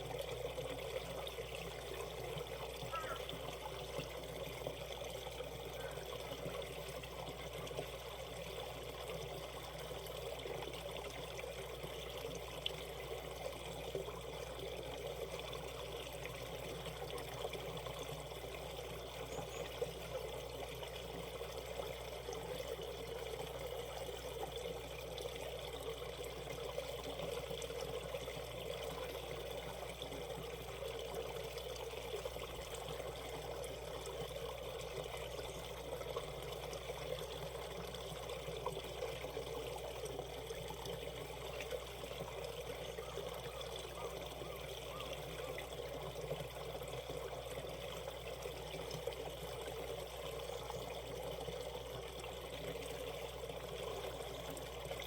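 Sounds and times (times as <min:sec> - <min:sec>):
stream trickling over rocks: 0:00.0 - 0:55.0.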